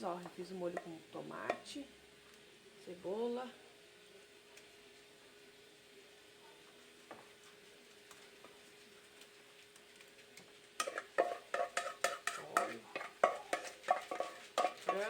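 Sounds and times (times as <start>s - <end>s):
spoon scraping in a pan: 0.2s - 1.8s, 10.8s - 15.0s.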